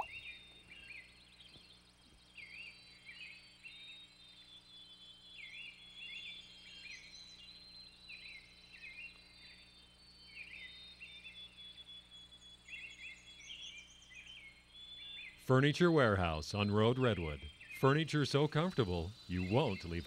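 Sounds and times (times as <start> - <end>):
birds chirping: 0.0 - 20.0
high insect-like drone: 17.9 - 20.0.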